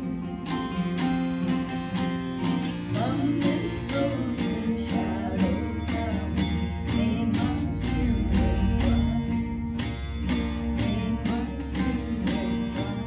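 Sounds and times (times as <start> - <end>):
acoustic guitar: 0.0 - 13.0.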